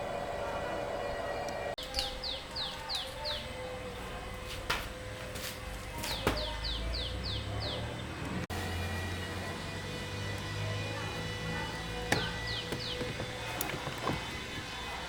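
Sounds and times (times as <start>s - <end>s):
bird chirping: 1.8s - 3.6s, 6.1s - 8.4s, 12.2s - 14.8s.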